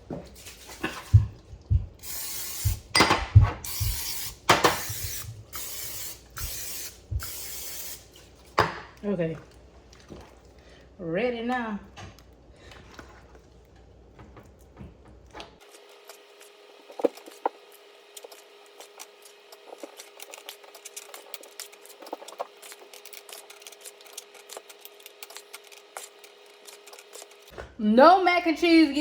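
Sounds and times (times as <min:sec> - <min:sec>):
spoon clicking and scraping: 0:18.2 - 0:27.5.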